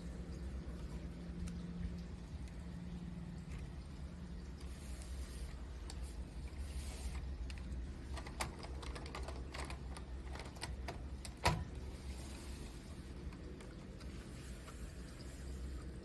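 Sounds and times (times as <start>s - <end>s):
plastic bricks clicking: 7.5s - 11.6s.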